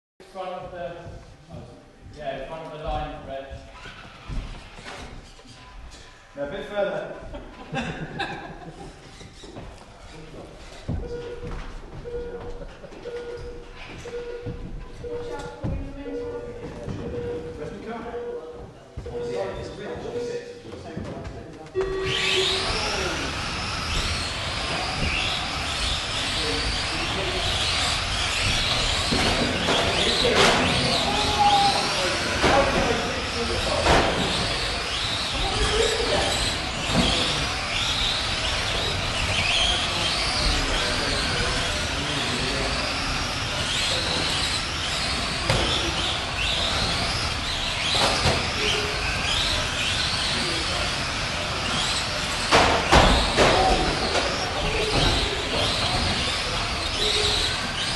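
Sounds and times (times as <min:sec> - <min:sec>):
electric motors whining: 0:21.8 - 0:57.9.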